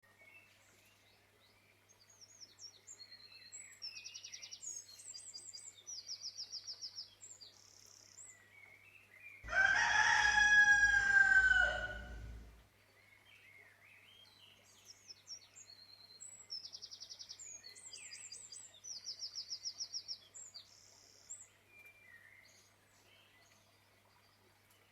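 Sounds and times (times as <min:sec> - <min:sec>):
small birds chirping: 0:02.3 - 0:12.6
rooster crowing: 0:09.5 - 0:12.6.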